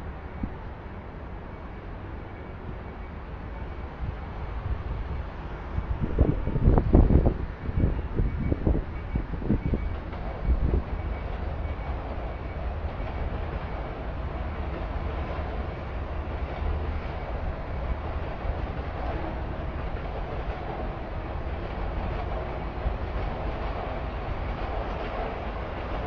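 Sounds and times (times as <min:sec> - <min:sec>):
train rumbling and rattling: 0:00.0 - 0:26.0.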